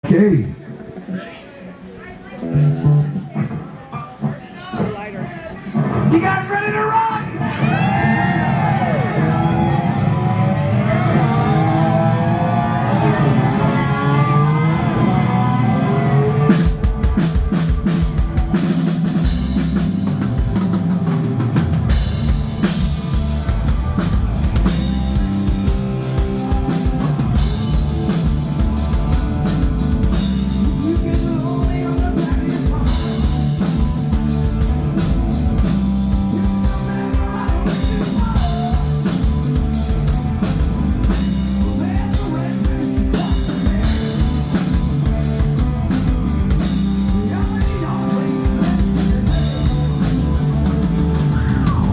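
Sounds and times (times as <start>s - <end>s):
electric guitar: 2.4s - 6.2s, 7.3s - 51.9s
bass guitar: 2.4s - 51.9s
drum kit beat: 16.5s - 51.9s
person singing: 30.6s - 34.0s, 36.2s - 39.6s, 41.5s - 45.0s, 47.0s - 51.9s.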